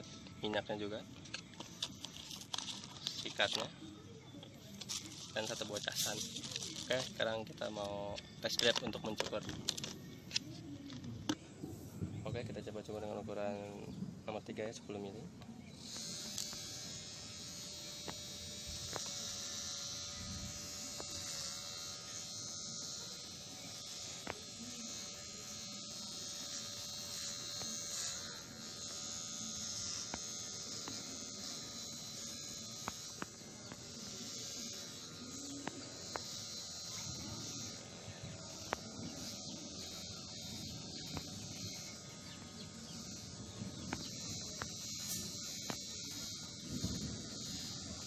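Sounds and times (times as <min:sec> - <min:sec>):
electric hair clipper buzzing: 0:00.0 - 0:03.7, 0:04.8 - 0:10.4, 0:15.7 - 0:48.0.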